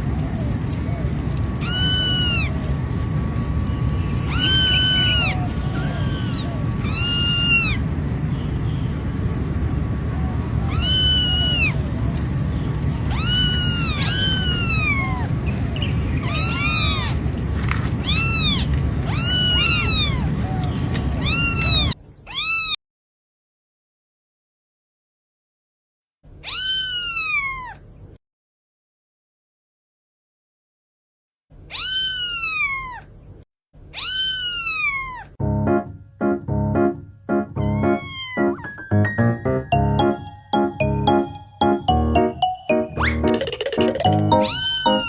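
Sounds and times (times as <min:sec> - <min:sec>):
cat meowing: 0:00.0 - 0:02.8, 0:03.4 - 0:08.0, 0:10.1 - 0:22.8, 0:26.4 - 0:27.8, 0:31.7 - 0:33.1, 0:33.9 - 0:35.4, 0:37.6 - 0:38.7, 0:44.4 - 0:45.0
steady low rumble: 0:00.0 - 0:22.0.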